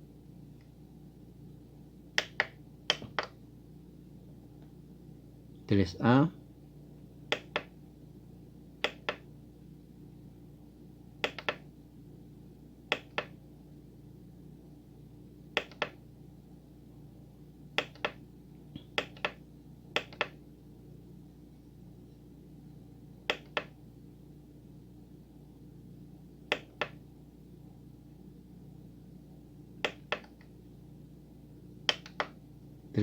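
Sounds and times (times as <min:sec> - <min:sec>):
faint steady hum: 0:00.0 - 0:33.0
synthesizer buttons clicking: 0:02.2 - 0:03.4, 0:07.3 - 0:07.7, 0:08.8 - 0:09.2, 0:11.2 - 0:11.6, 0:12.9 - 0:13.4, 0:15.6 - 0:16.0, 0:17.8 - 0:18.2, 0:18.8 - 0:19.4, 0:20.0 - 0:20.4, 0:23.3 - 0:23.8, 0:26.5 - 0:27.0, 0:29.8 - 0:30.5, 0:31.9 - 0:32.4.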